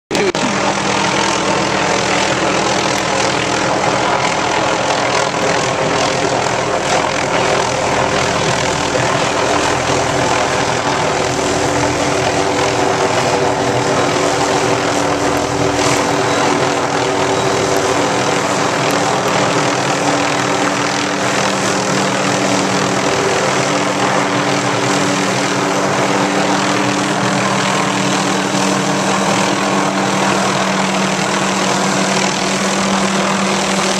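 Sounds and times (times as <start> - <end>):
helicopter engine and rotor drone: 0.1 - 33.9.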